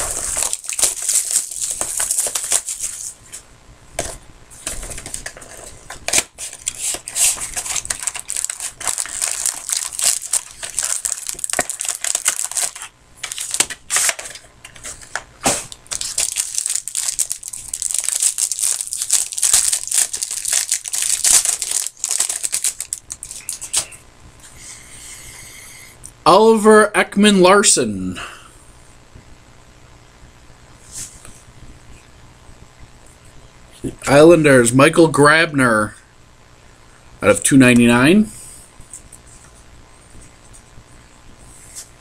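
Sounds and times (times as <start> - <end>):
cardboard and wrapping tearing: 0.0 - 3.2, 4.7 - 23.9.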